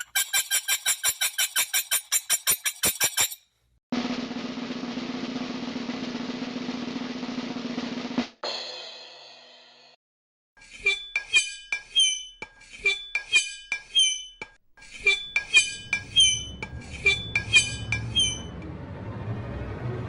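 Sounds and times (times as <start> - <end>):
low rumbling noise: 16.4 - 20.0.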